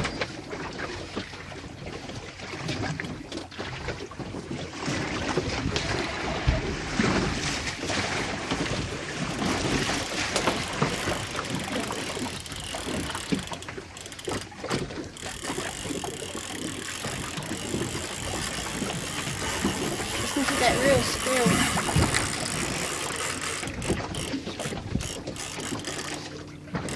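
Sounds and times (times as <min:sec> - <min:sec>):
boat rocking on sea swell: 0:00.0 - 0:26.9
wind buffeting microphone: 0:17.6 - 0:22.8.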